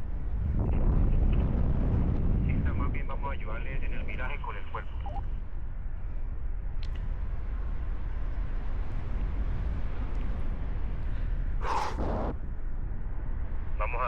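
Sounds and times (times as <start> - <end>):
wind rushing over microphone: 0.0 - 4.2, 7.1 - 13.6.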